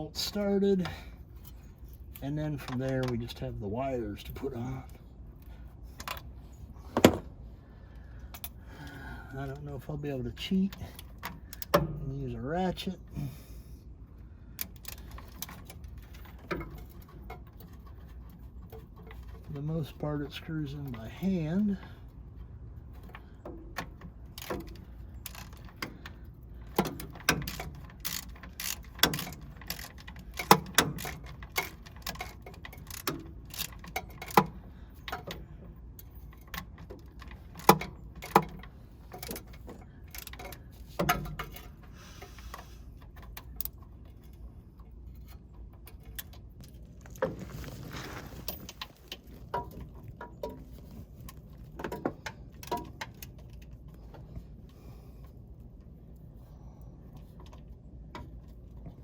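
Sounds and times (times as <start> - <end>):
ratcheting: 22.9 - 35.4.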